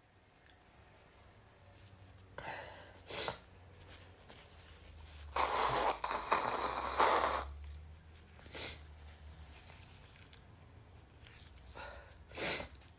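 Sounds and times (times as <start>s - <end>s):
person sneezing: 5.4s - 7.5s, 12.3s - 12.7s.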